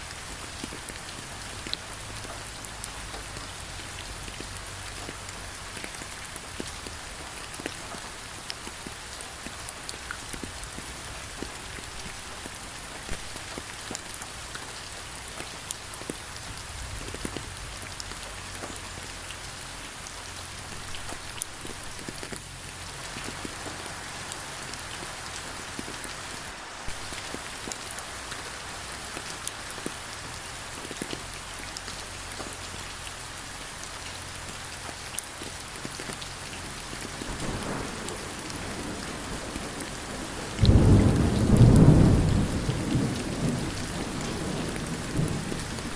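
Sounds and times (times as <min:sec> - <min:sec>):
rain drops tapping: 0:00.0 - 0:45.9
steady rain: 0:00.0 - 0:45.9
thunder rumbling: 0:37.2 - 0:45.9.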